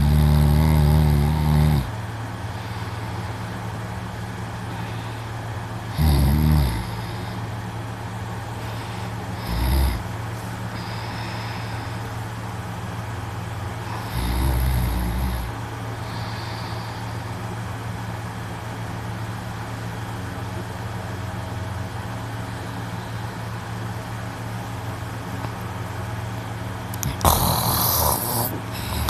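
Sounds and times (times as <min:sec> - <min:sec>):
man snoring: 0:00.0 - 0:03.2, 0:05.9 - 0:07.4, 0:08.7 - 0:10.1, 0:10.7 - 0:12.0, 0:13.8 - 0:17.2, 0:26.9 - 0:29.0
steady low hum: 0:00.0 - 0:29.0.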